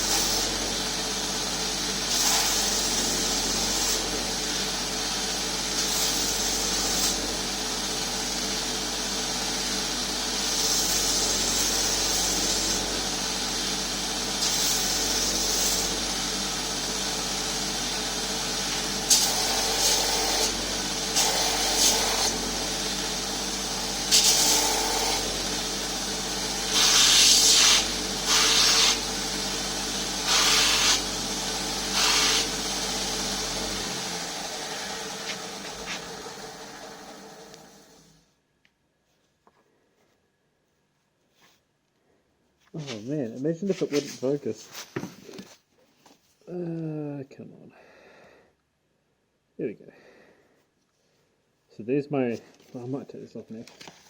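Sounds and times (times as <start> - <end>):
power grinder running: 0.0 - 38.2
hissing grind on wood: 26.7 - 29.1, 30.2 - 31.2, 31.9 - 32.7, 34.3 - 36.5.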